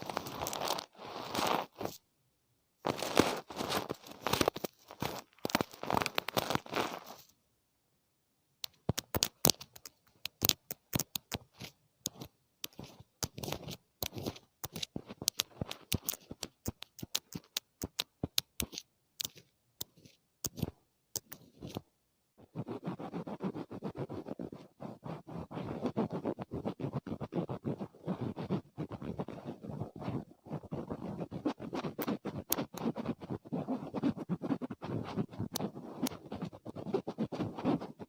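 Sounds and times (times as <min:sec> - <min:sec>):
crisp scratchy clicks: 0:00.0 - 0:02.0, 0:02.8 - 0:07.4, 0:08.6 - 0:21.9, 0:22.6 - 0:38.0
ear-cleaning scratching: 0:00.0 - 0:02.0, 0:02.8 - 0:07.3, 0:08.7 - 0:21.8, 0:22.5 - 0:38.0.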